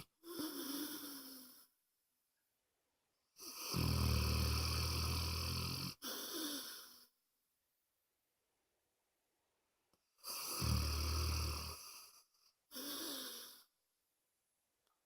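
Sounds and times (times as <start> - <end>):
dog snoring: 0.0 - 1.6, 3.4 - 7.0, 10.2 - 13.6.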